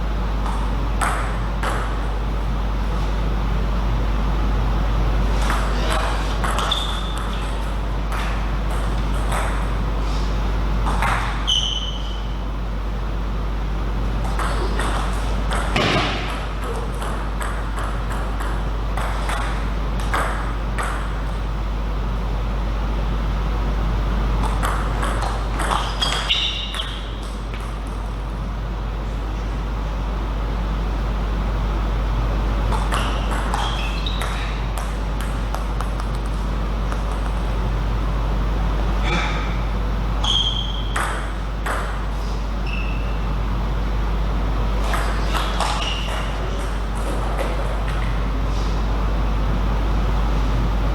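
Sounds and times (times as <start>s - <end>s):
steady low hum: 0.0s - 50.9s
short high squeaks: 6.6s - 7.4s, 11.4s - 12.4s, 25.8s - 27.0s, 33.0s - 34.6s, 40.2s - 41.0s, 42.6s - 43.2s, 45.4s - 46.2s.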